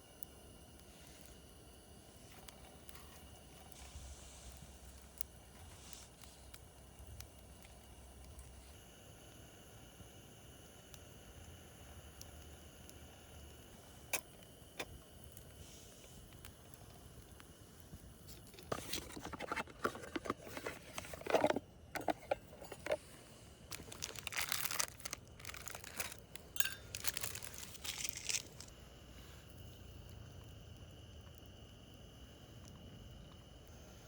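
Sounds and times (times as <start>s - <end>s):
crinkling and rustling: 18.2s - 28.8s.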